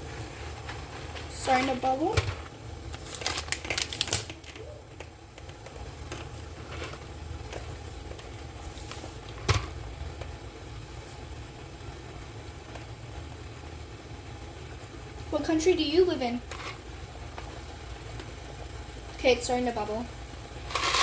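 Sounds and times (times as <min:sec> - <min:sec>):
water bubbling in pot: 0:00.0 - 0:15.6.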